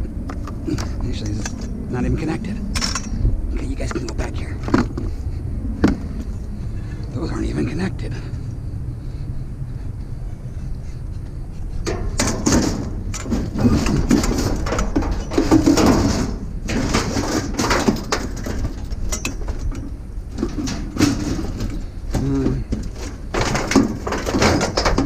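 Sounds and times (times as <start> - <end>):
steady low rumble: 0.0 - 25.0
scrap metal clanking and scraping: 0.3 - 5.1, 11.8 - 25.0.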